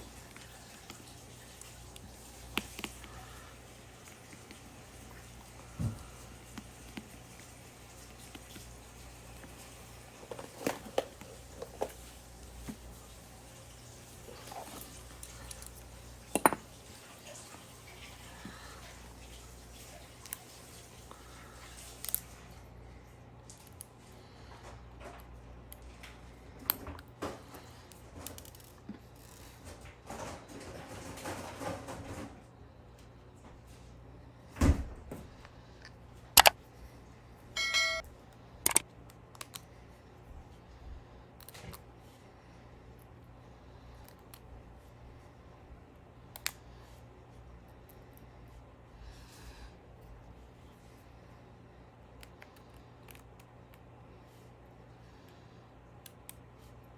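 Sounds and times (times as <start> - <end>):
short ringing tone: 37.6 - 38.0
small tools clicking and tapping: 38.6 - 39.6.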